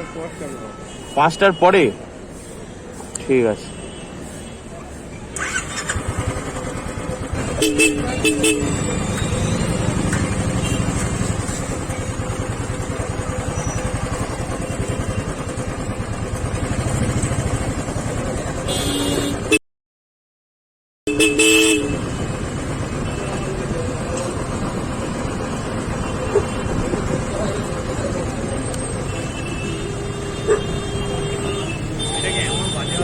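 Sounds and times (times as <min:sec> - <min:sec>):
vehicle horns honking: 0:00.0 - 0:02.1, 0:07.3 - 0:11.4, 0:18.6 - 0:19.6, 0:21.1 - 0:23.6, 0:28.7 - 0:33.0
motorcycle engine running: 0:05.4 - 0:19.3, 0:21.4 - 0:31.7.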